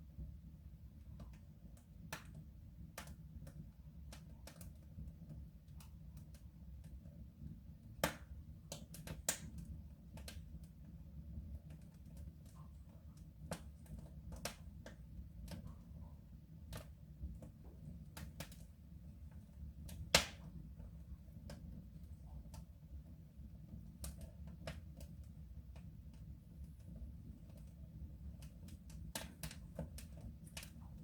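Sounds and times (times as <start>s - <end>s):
fire crackling in a stove: 0.0s - 31.0s.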